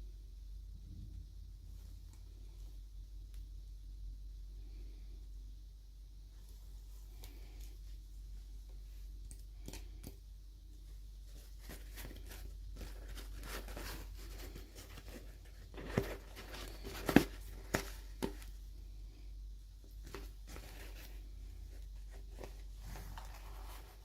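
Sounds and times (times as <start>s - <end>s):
wrapping rustling and tearing: 11.3s - 18.4s.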